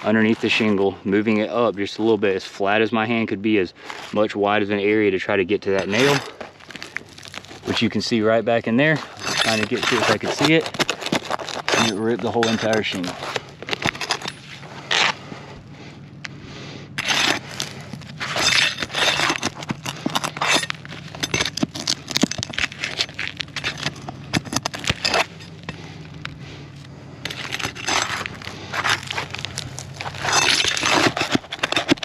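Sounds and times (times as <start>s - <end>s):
shingles scraping and crackling: 3.8s - 4.3s, 5.6s - 15.5s, 17.0s - 32.0s.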